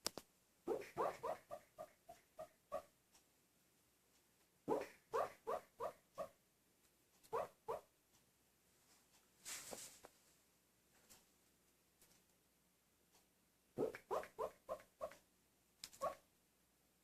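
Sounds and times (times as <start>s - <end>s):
dog barking softly in sleep: 0.7s - 2.9s, 4.7s - 6.4s, 7.3s - 7.9s, 13.8s - 15.2s, 16.0s - 16.2s.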